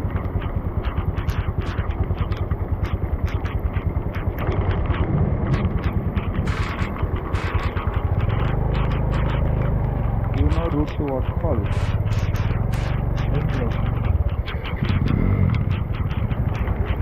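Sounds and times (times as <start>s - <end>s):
motorbike engine running: 0.0s - 17.0s.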